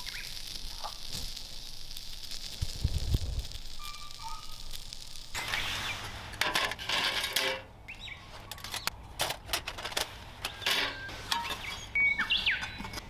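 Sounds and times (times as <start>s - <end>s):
bird chirp: 0.0s - 0.4s, 3.8s - 4.7s, 7.8s - 8.9s, 10.5s - 13.0s.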